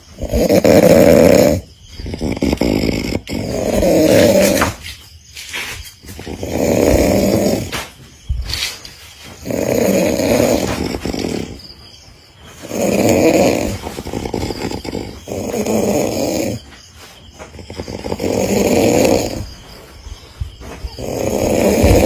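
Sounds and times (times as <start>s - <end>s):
loud snoring: 0.0s - 4.8s, 6.1s - 7.8s, 9.4s - 11.7s, 12.6s - 16.7s, 17.5s - 19.6s, 21.0s - 22.0s.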